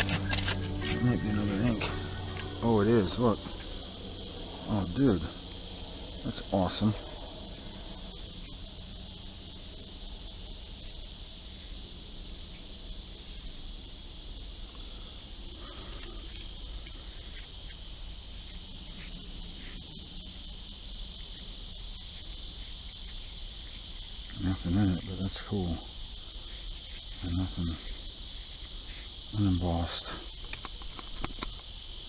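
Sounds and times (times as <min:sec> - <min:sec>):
high-pitched insect chorus: 0:00.0 - 0:32.0.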